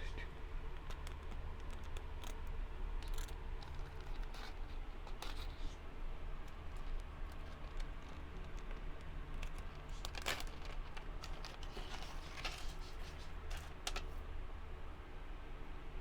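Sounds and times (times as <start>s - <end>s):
small clicks: 0.7s - 5.8s
packaging crinkling and rustling: 0.7s - 14.2s.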